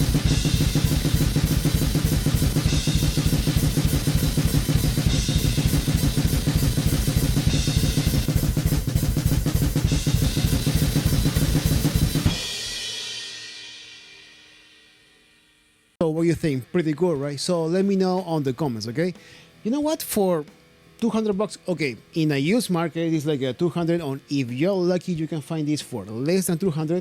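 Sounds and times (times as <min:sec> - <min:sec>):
bass drum strokes: 0:00.0 - 0:13.5
cymbal crashes: 0:00.0 - 0:15.9.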